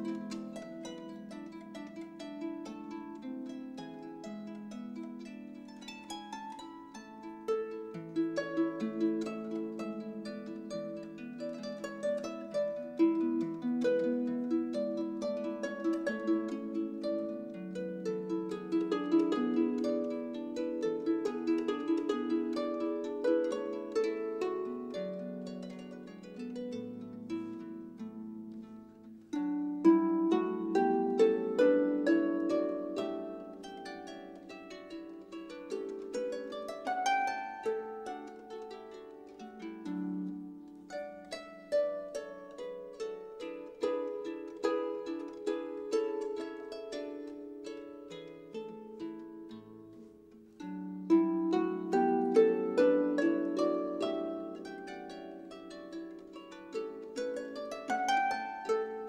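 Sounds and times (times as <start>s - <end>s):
plucked string music: 0.0s - 59.0s.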